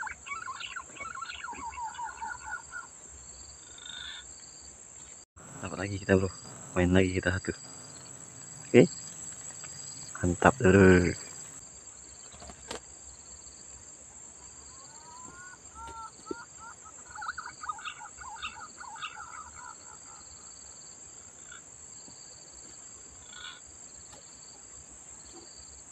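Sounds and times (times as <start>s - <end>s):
high insect drone: 5.4s - 25.8s.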